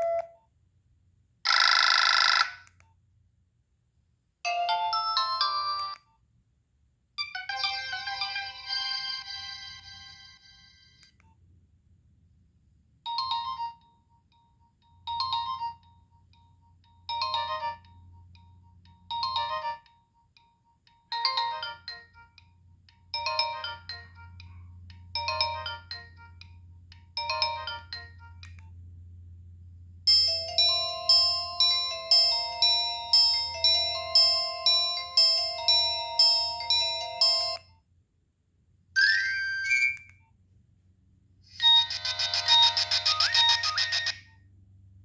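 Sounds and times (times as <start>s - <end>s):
phone ringtone phrase: 0.0s - 0.3s, 1.5s - 2.6s, 7.2s - 10.9s, 41.6s - 44.2s
bright chime-like ringtone: 4.5s - 6.0s, 7.2s - 11.0s, 13.1s - 16.3s, 16.9s - 19.9s, 21.1s - 22.3s, 23.2s - 24.6s, 25.2s - 26.4s, 27.2s - 28.4s, 30.1s - 37.7s, 39.0s - 40.1s, 41.6s - 44.3s.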